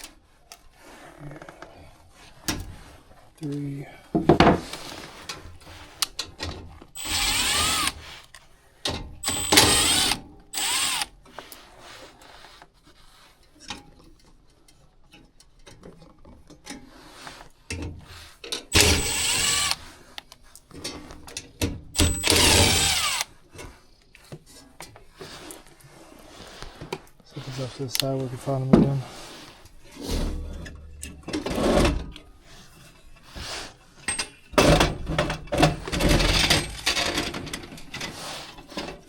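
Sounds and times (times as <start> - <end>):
cordless drill spinning: 7.0 - 8.2, 9.2 - 11.1, 18.7 - 19.8, 22.0 - 23.3.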